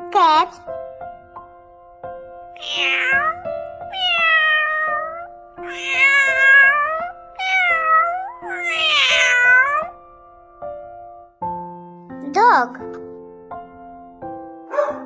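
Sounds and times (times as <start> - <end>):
soft background music: 0.0 - 15.0
cat meowing: 2.6 - 10.0.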